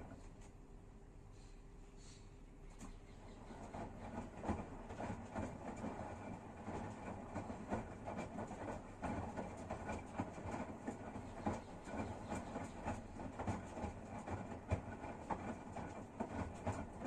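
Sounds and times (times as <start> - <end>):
washing machine humming: 0.0 - 17.0.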